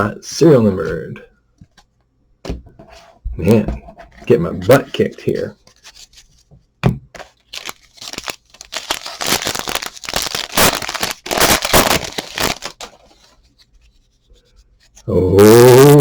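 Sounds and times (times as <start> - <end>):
plastic wrapper crinkling and tearing: 7.4 - 13.4.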